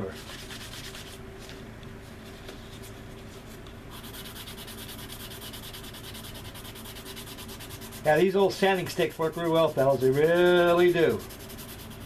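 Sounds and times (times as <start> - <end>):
sanding stick rubbing: 0.2 - 1.2, 3.9 - 12.0.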